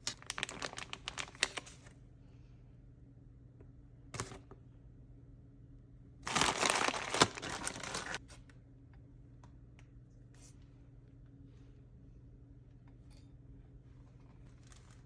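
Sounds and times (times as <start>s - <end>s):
plastic packaging crinkling: 0.0s - 1.8s, 6.2s - 8.2s.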